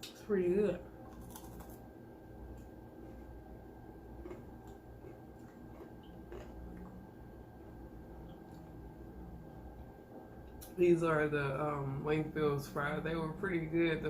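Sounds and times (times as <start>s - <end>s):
low room hum: 0.0s - 14.0s
person chewing: 1.0s - 1.8s, 4.0s - 7.1s.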